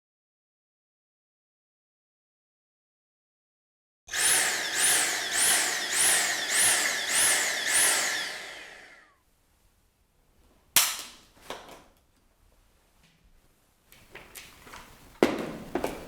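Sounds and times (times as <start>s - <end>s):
vacuum cleaner pulsing: 4.1s - 9.2s.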